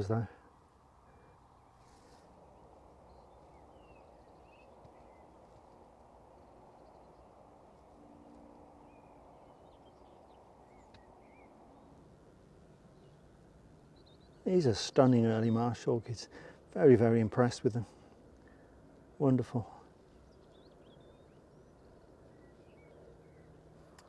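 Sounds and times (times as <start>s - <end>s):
distant birds chirping: 0.0s - 24.0s.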